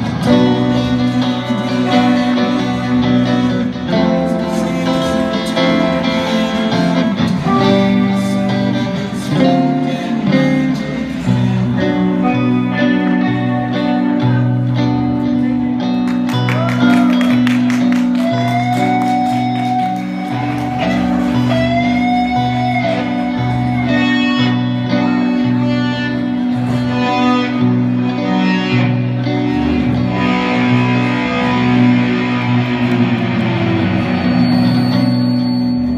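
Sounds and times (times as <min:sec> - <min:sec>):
picked guitar line: 0:00.0 - 0:35.9
sliding lead guitar melody: 0:00.0 - 0:35.9
pulsing bass: 0:26.2 - 0:35.9.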